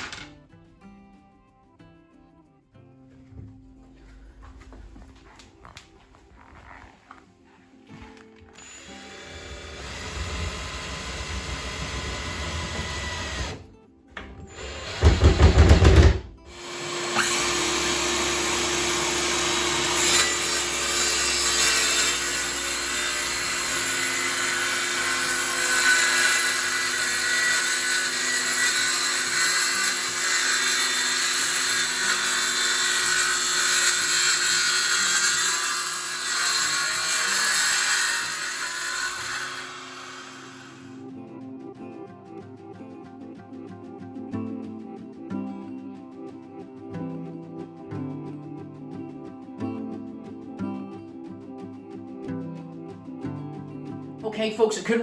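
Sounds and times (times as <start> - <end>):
background music: 0.0 - 55.0
power drill running: 8.5 - 13.6, 14.5 - 41.0.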